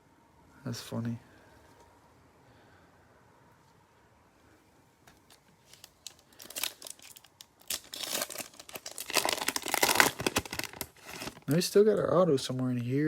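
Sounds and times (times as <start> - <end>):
foil wrapper crinkling and tearing: 5.3 - 11.6.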